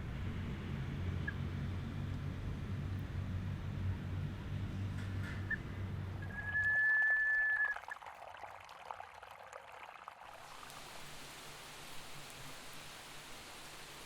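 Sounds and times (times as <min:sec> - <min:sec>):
water dripping: 0:06.2 - 0:11.1.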